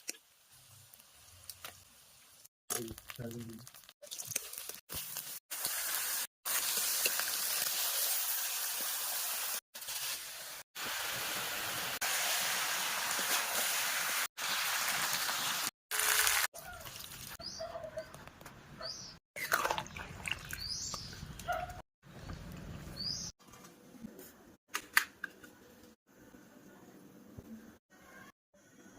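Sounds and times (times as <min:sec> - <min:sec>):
small birds chirping: 0:17.4 - 0:19.2, 0:19.9 - 0:23.3.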